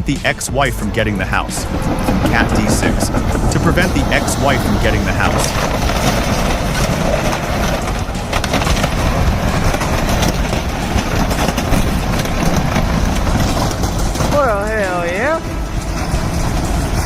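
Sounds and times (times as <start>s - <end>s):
diesel engine rumbling: 0.0s - 17.0s
faint clanks and rattles: 0.2s - 17.0s.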